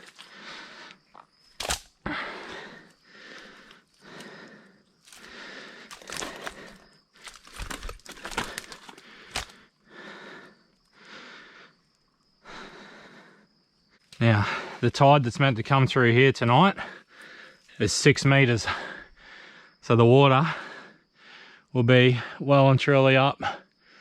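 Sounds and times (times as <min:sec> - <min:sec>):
twigs snapping: 0:01.1 - 0:02.0, 0:05.0 - 0:09.6
leaves and branches rustling: 0:02.8 - 0:09.6.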